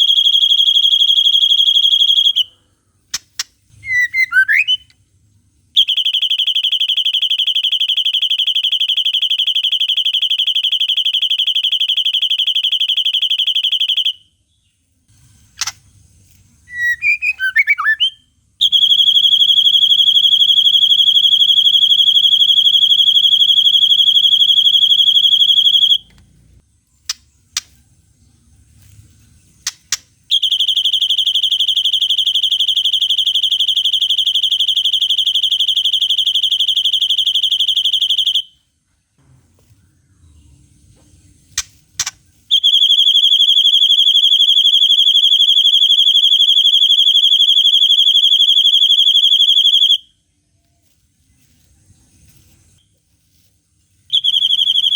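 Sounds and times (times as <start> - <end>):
bird singing high-pitched trill: 0.0 - 2.5, 3.8 - 4.9, 16.7 - 26.0, 54.1 - 54.9
short sharp bird chips: 15.1 - 18.2.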